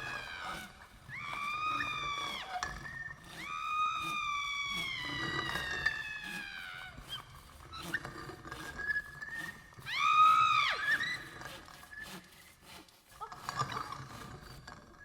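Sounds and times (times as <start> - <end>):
high-pitched screaming cries: 0.0 - 8.0, 9.8 - 11.4.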